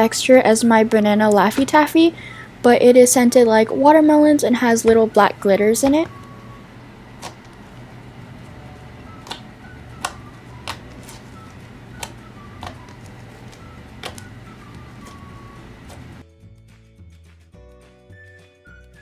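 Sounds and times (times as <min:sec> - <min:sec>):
low hum: 0:04.4 - 0:16.2
slime clicking and popping: 0:09.2 - 0:11.2, 0:12.0 - 0:14.3.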